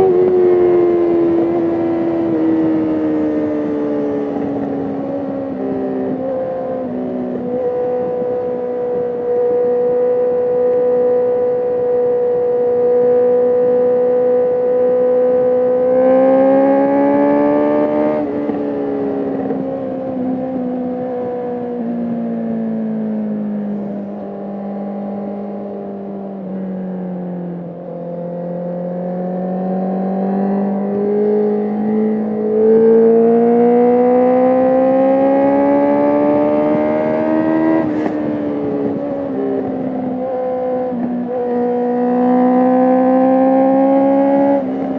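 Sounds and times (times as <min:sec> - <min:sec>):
motorcycle engine revving: 0:00.0 - 0:21.9, 0:23.2 - 0:44.9.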